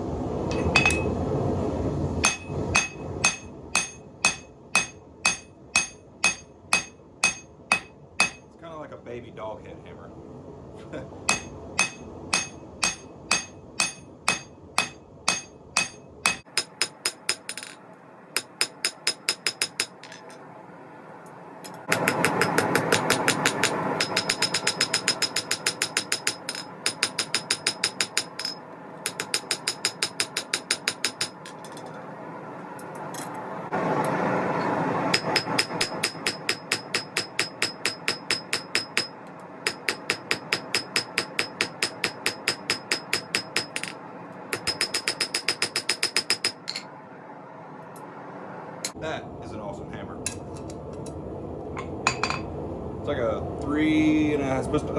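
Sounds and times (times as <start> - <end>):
steady rushing noise: 0.0 - 54.9
hammer striking steel on anvil: 0.5 - 1.1, 2.2 - 8.5, 11.3 - 17.8, 18.4 - 20.4, 21.7 - 32.0, 35.1 - 46.9.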